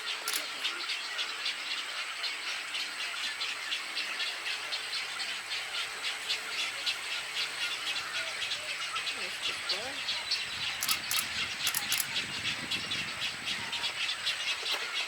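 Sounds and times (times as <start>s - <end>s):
chicks ticking chatter: 0.0s - 1.2s, 4.6s - 14.9s.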